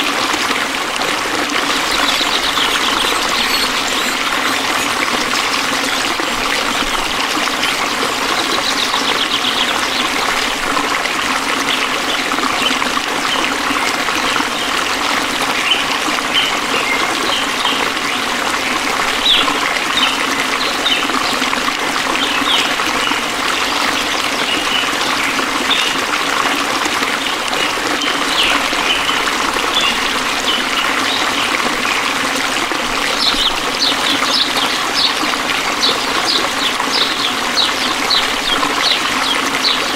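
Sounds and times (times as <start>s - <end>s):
stream water flowing: 0.0s - 39.9s
short high chirps: 1.8s - 6.8s.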